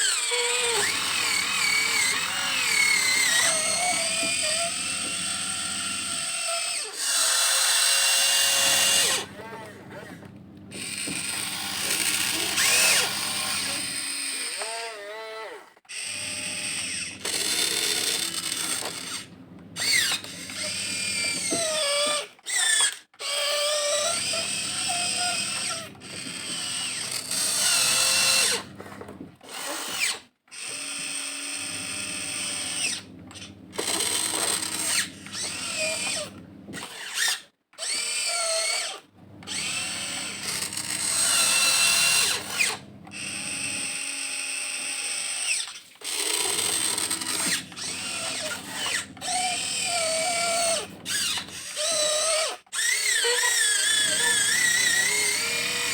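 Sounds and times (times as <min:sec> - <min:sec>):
toy excavator motors whining: 0:00.0 - 0:55.9.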